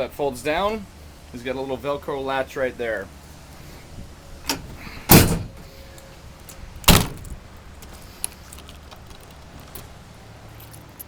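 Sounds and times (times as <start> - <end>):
pickup tailgate slamming: 4.1 - 6.0, 6.8 - 7.4
faint clicks and handling noises: 7.2 - 11.0.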